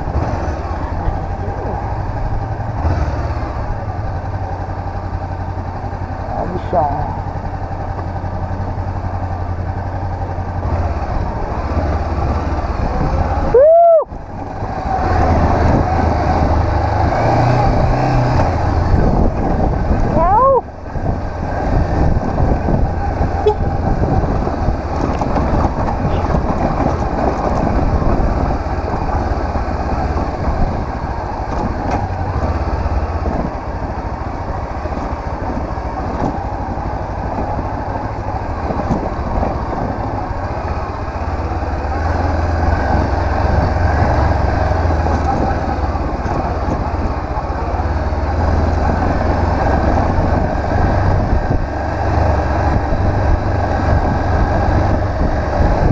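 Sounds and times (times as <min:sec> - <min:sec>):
motorcycle engine rumbling: 0:00.0 - 0:55.9.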